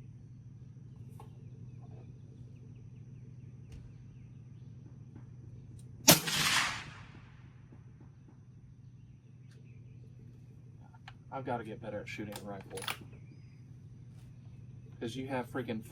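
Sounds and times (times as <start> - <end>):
faint low hum: 0.0 - 15.9
rifle shot: 6.1 - 7.6.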